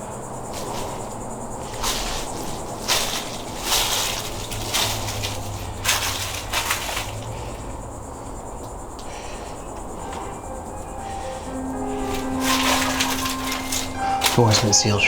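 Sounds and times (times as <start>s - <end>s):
footsteps crunching through dry leaves: 0.4s - 7.9s, 10.0s - 15.0s.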